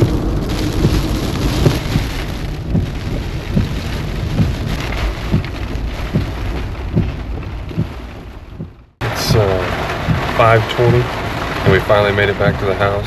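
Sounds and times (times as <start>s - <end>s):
heavy rain pouring: 0.0s - 13.0s
large raindrops thudding: 0.0s - 13.0s.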